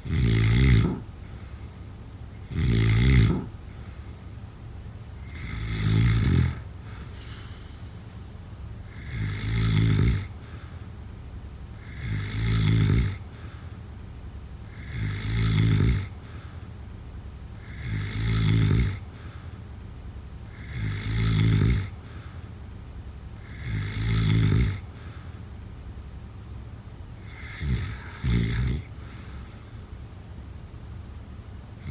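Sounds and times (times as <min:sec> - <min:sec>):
person snoring: 0:00.0 - 0:01.1, 0:02.5 - 0:03.6, 0:05.3 - 0:07.8, 0:08.9 - 0:10.6, 0:27.3 - 0:29.4.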